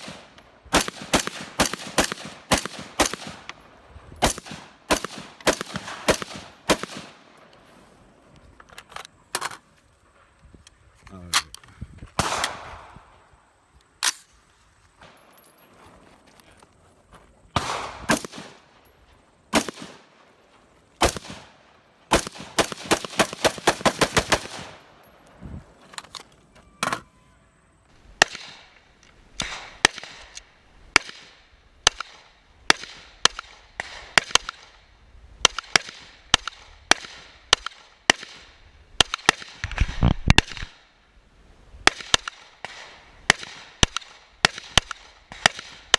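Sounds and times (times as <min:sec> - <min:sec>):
gunshots: 0:00.0 - 0:03.5, 0:04.2 - 0:07.3, 0:12.2 - 0:13.1, 0:17.6 - 0:18.7, 0:19.5 - 0:20.1, 0:21.0 - 0:24.9.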